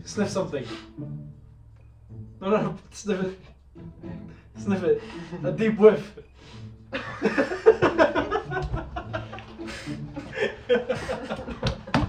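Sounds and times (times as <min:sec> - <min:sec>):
people speaking: 0:00.0 - 0:00.8, 0:02.4 - 0:03.5, 0:04.6 - 0:06.2
people laughing: 0:04.6 - 0:12.0.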